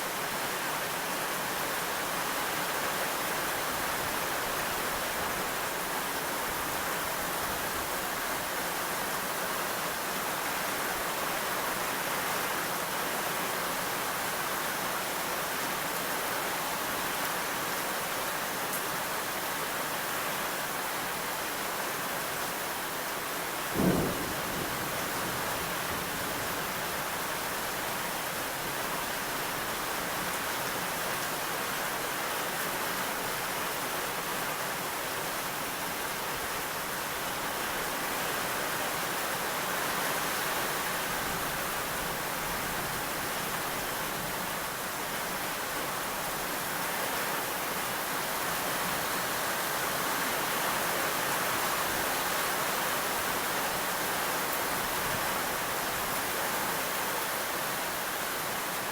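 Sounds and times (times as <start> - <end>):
steady rain: 0.0 - 58.9
low boom of thunder: 23.8 - 27.2.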